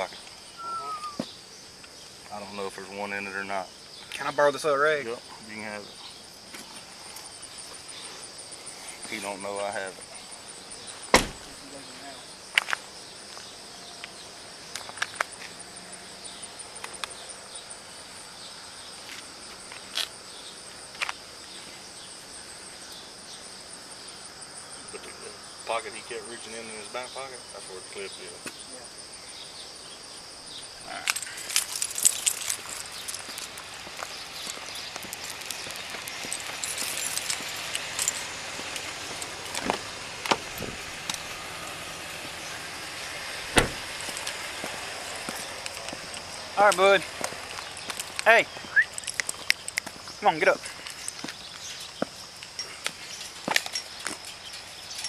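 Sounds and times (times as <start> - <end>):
insects chirring: 0.0 - 55.0
steady background hiss: 0.0 - 55.0.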